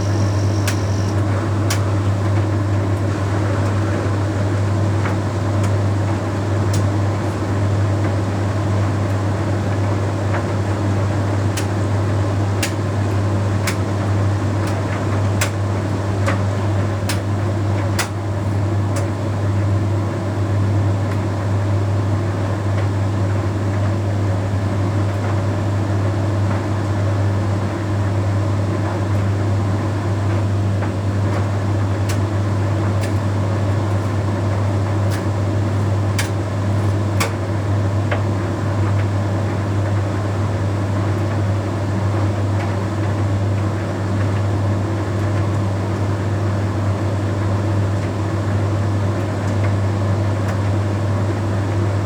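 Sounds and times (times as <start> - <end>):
tumble dryer hum: 0.0 - 6.9.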